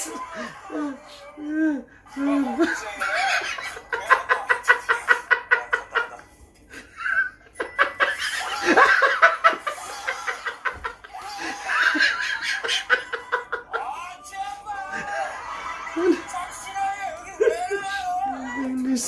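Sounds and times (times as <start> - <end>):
person laughing hard: 2.4 - 16.4.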